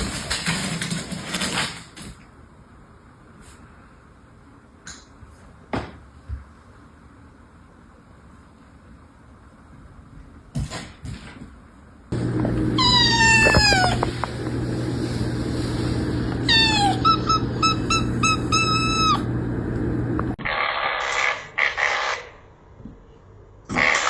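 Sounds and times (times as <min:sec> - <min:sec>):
steady hum: 0:11.6 - 0:24.0
cat meowing: 0:12.8 - 0:14.1, 0:16.5 - 0:17.2.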